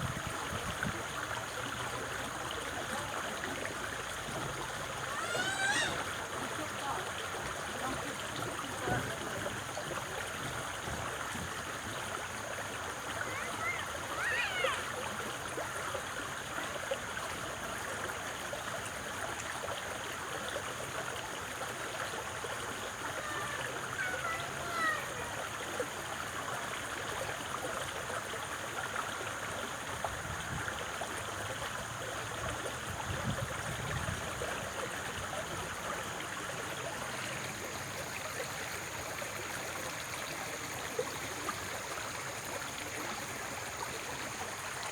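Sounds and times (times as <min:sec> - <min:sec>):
stream water rushing: 0:00.0 - 0:44.9.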